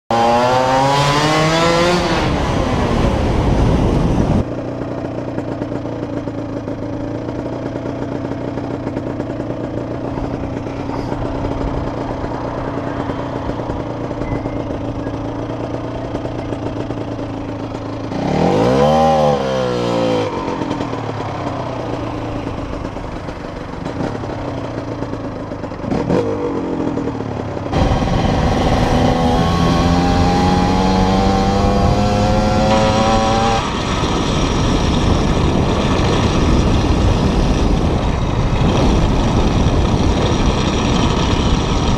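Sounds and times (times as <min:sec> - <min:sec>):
two-stroke motorcycle engine revving: 0:00.1 - 0:41.9.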